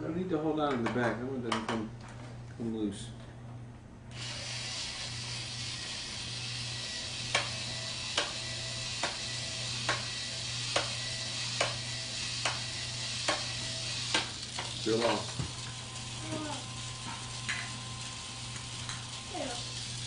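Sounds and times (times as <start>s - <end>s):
toy drill whirring: 4.1s - 20.0s.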